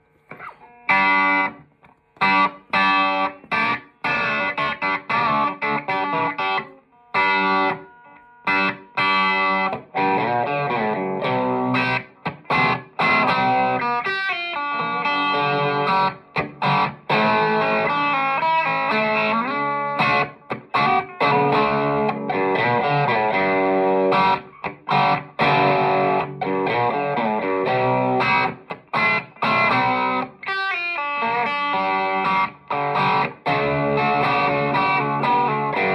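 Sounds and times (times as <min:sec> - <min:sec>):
overdriven electric guitar: 0:00.0 - 0:35.9.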